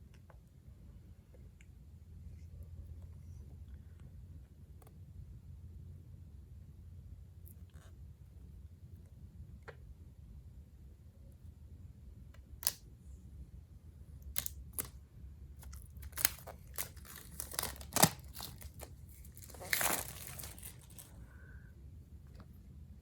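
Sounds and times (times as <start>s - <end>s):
packaging tearing and crinkling: 14.4s - 14.9s, 15.6s - 21.2s.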